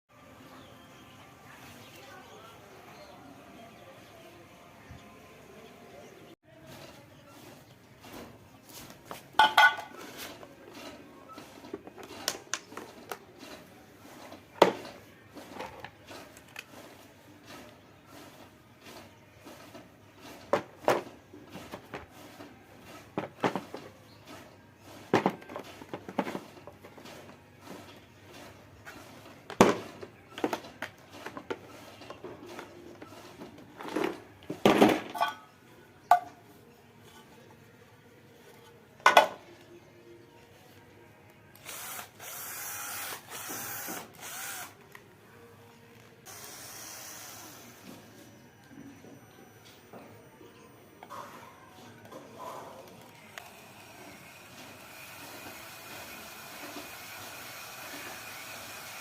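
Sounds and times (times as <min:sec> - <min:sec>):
electric drill driving screw into wood: 0:41.6 - 0:44.8, 0:46.3 - 0:47.8.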